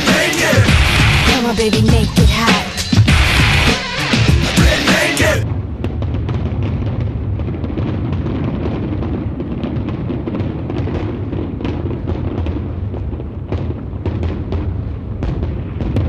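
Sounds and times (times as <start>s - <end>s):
fireworks pops and crackles: 5.4s - 16.0s.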